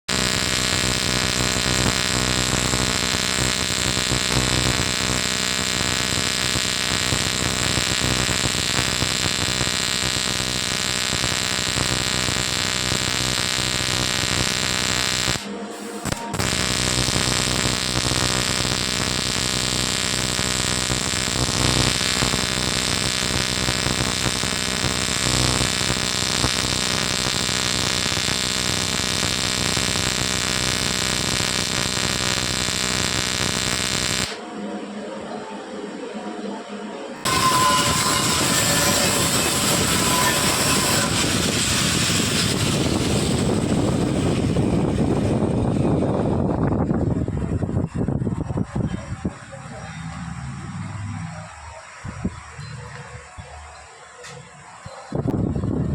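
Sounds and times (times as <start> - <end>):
welding equipment buzz and hiss: 0.0 - 34.5, 37.2 - 47.0.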